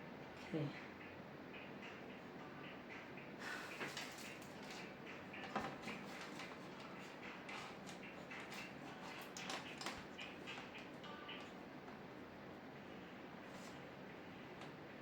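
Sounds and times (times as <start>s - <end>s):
faint clicks of small parts: 7.5s - 12.0s.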